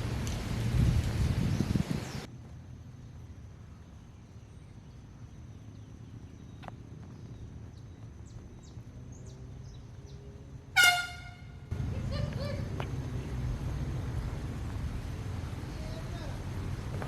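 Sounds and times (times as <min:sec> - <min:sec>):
air horn blast: 0:10.8 - 0:11.7.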